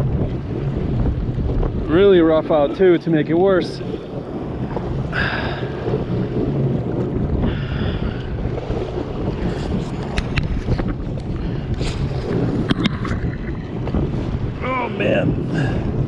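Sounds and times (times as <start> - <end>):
sea water sloshing: 0.0 - 16.0
wind buffeting microphone: 0.0 - 16.0.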